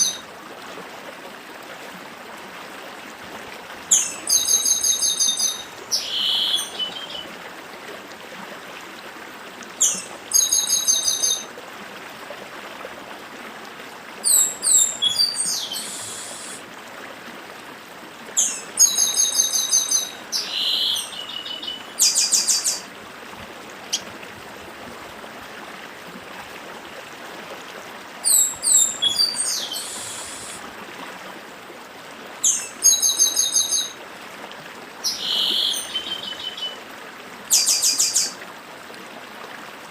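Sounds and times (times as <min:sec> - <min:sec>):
stream rushing: 0:00.0 - 0:39.9
bird singing high repeated notes: 0:14.3 - 0:16.6.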